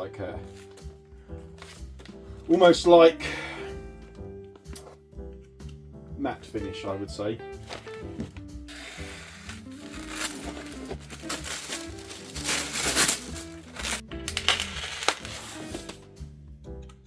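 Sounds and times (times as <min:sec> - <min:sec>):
background music: 0:00.0 - 0:17.0
packaging rustling and crinkling: 0:07.6 - 0:16.1.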